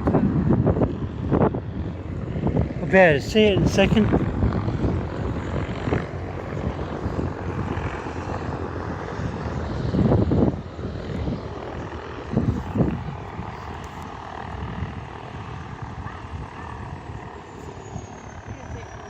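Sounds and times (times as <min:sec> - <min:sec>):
helicopter engine and rotor: 0:00.0 - 0:19.0.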